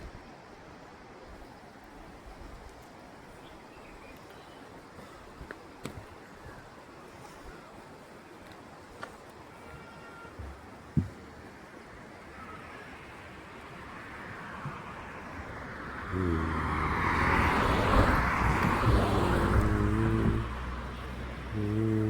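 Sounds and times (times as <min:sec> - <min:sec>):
vehicle passing by: 0:14.0 - 0:22.0
low engine note: 0:15.9 - 0:22.0.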